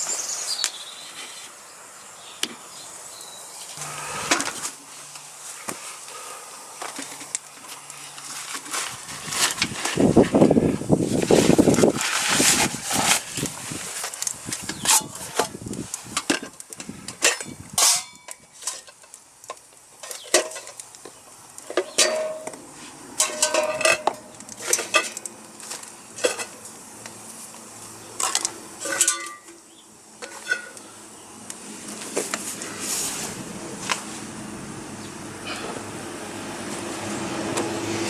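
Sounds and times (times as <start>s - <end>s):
metal pots clinking and knocking: 17.2s - 19.0s, 21.7s - 22.6s, 23.2s - 25.2s, 28.2s - 29.6s, 30.2s - 30.8s.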